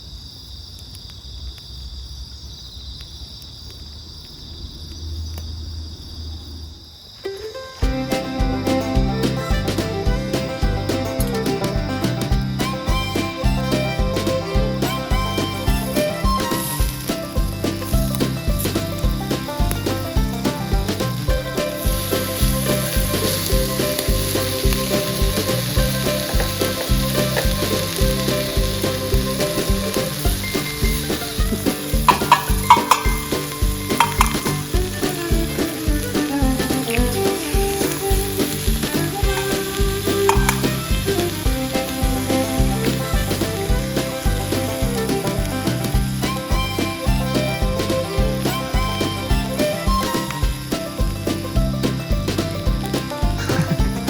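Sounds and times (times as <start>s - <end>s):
crickets chirring: 0.0s - 7.8s
background music with a beat: 7.8s - 54.0s.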